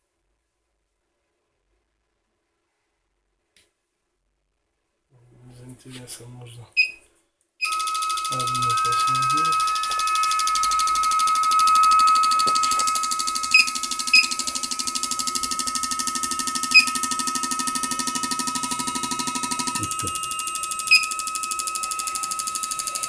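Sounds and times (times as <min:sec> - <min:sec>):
short beeps: 0:07.6 - 0:23.0
steady high whine: 0:07.6 - 0:23.0
low hum: 0:07.8 - 0:23.0.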